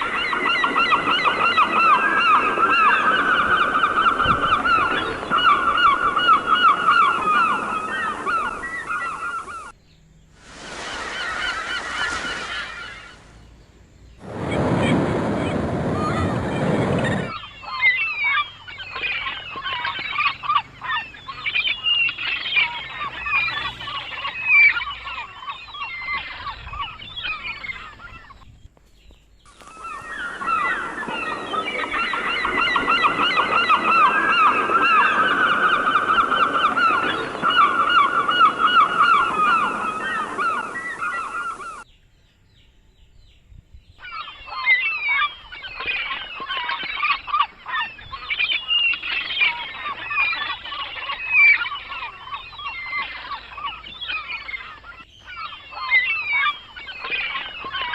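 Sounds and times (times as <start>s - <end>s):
chorus of birds calling: 0.0s - 43.3s, 43.9s - 57.9s.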